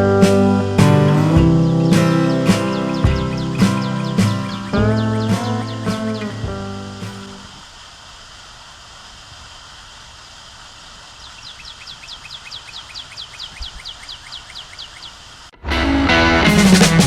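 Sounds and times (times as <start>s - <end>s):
outdoor background hiss: 0.0s - 17.0s
bird calling high notes: 0.8s - 7.6s.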